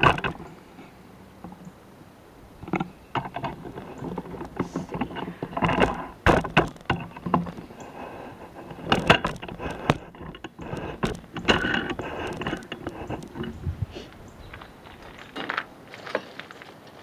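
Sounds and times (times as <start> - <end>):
metal gutter knocking and scraping: 0.0 - 0.5, 2.6 - 13.7.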